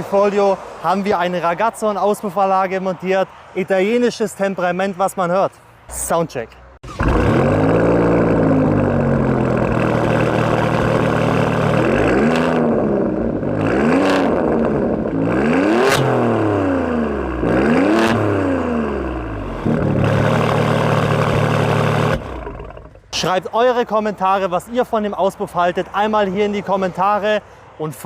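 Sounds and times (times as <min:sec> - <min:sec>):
car engine idling: 0:06.8 - 0:13.7, 0:18.8 - 0:23.3
car engine revving: 0:06.8 - 0:23.2
exhaust cracks: 0:06.8 - 0:23.5.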